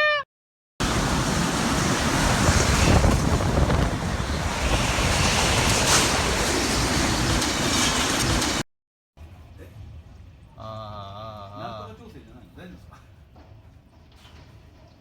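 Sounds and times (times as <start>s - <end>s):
storm wind and water rushing: 0.8s - 8.6s
wind buffeting microphone: 1.0s - 8.6s.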